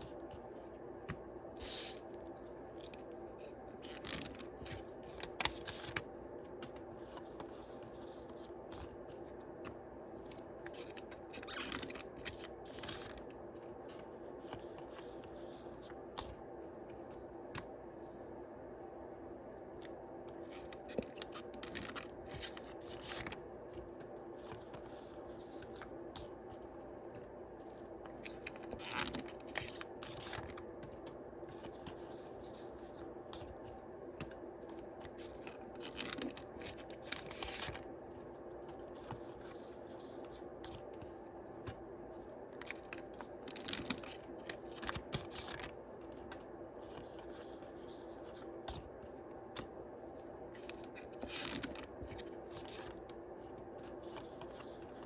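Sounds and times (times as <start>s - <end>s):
cards rustling and sliding: 27.8s - 41.8s, 42.6s - 48.9s.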